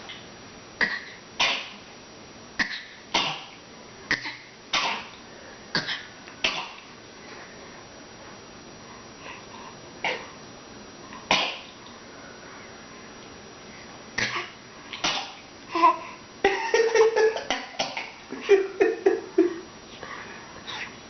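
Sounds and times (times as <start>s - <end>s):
person coughing: 16.7s - 18.2s.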